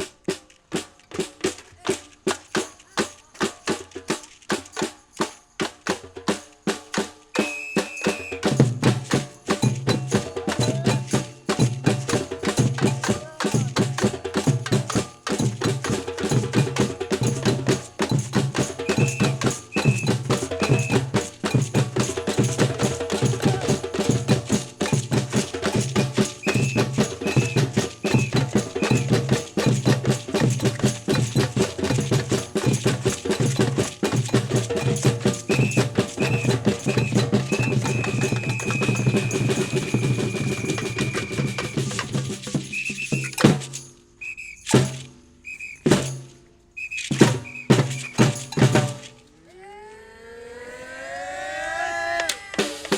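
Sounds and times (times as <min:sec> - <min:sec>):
samba percussion ensemble drumming: 0:00.0 - 0:44.0, 0:44.6 - 0:49.1, 0:52.6 - 0:52.9
samba whistle blasts: 0:07.3 - 0:09.0, 0:18.5 - 0:21.8, 0:26.2 - 0:29.4, 0:35.3 - 0:43.4, 0:44.2 - 0:46.0, 0:46.7 - 0:48.4
bass drum beat: 0:08.5 - 0:43.5.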